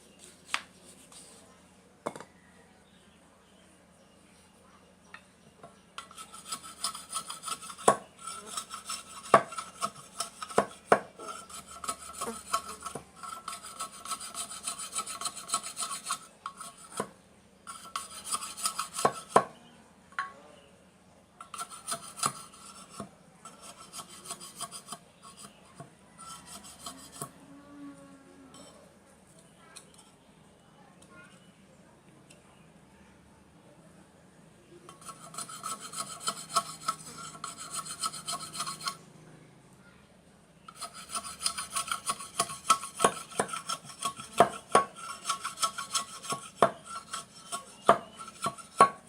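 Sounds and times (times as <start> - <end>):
bamboo being rasped: 6.0 - 17.1, 17.7 - 19.4, 21.4 - 27.4, 34.9 - 39.0, 40.7 - 49.0.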